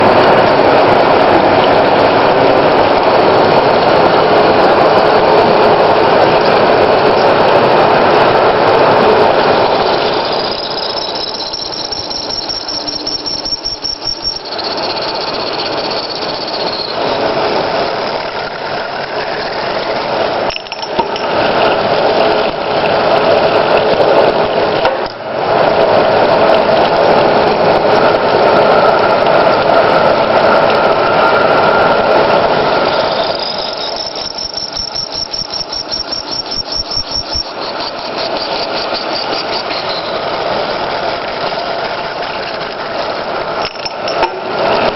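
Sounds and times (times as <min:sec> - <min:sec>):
lathe mechanical noise: 0:00.0 - 0:44.9
thin high squeal: 0:09.5 - 0:17.6, 0:32.6 - 0:40.2.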